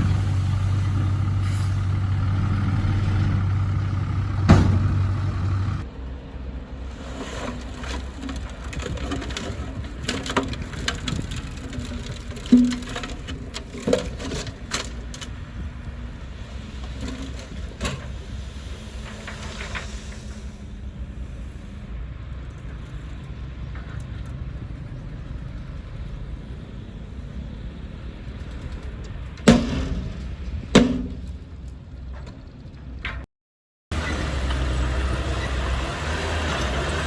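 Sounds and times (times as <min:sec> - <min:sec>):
heavy diesel engine running: 0:00.0 - 0:15.1, 0:33.9 - 0:37.0
loud knocks: 0:04.5 - 0:05.0.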